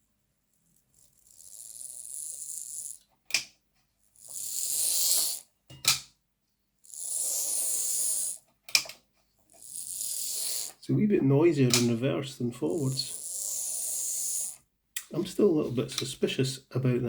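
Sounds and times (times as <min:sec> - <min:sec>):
model train motor whirring: 0:00.5 - 0:03.4, 0:04.1 - 0:05.4, 0:06.8 - 0:08.8, 0:09.5 - 0:10.8, 0:12.8 - 0:14.6
sharp click: 0:11.7 - 0:12.0.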